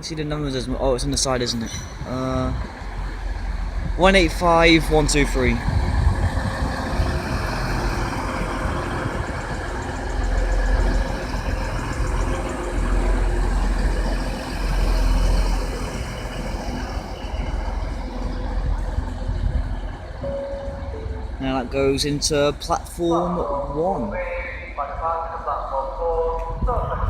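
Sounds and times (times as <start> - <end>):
diesel train engine rumble: 0.0 - 27.0
faint steady tones: 7.7 - 23.6.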